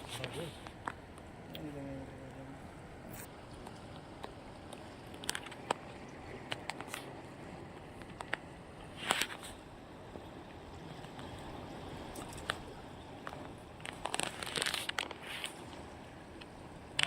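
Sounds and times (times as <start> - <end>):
steady outdoor hiss: 0.0 - 17.0
light clicks and taps: 3.6 - 7.1.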